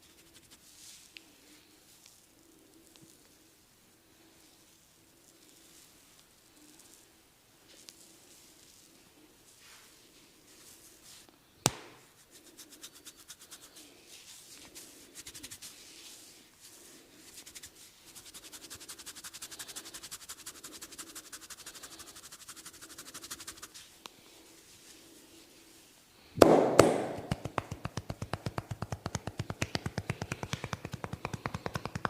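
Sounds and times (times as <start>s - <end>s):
scratching strokes on scalp: 0.0s - 3.6s, 4.2s - 11.3s, 12.0s - 26.0s, 27.1s - 32.0s
sharp snap: 11.6s - 12.0s, 26.4s - 32.0s.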